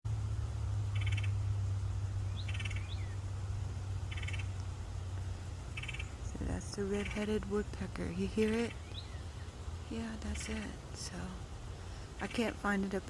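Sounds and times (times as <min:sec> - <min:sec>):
steady low hum: 0:00.1 - 0:13.0
woodpecker call: 0:00.9 - 0:01.5, 0:02.3 - 0:03.3, 0:04.1 - 0:04.6, 0:05.7 - 0:06.2, 0:06.9 - 0:07.4
bird chirps: 0:00.9 - 0:03.3, 0:04.0 - 0:07.4, 0:08.0 - 0:09.6.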